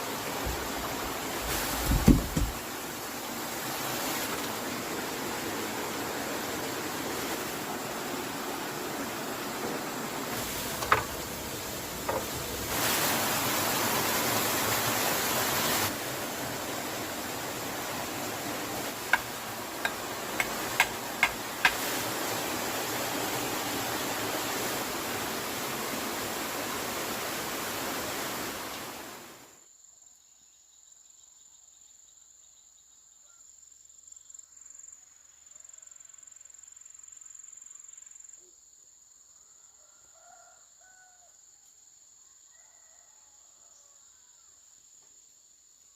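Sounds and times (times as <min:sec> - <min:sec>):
insect drone: 0:29.5 - 0:45.9.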